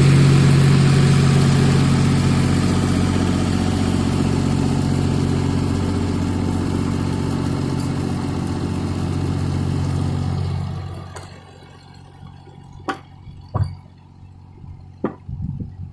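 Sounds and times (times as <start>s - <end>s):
engine idling: 0.0s - 15.9s
sharp knocks: 15.0s - 15.3s.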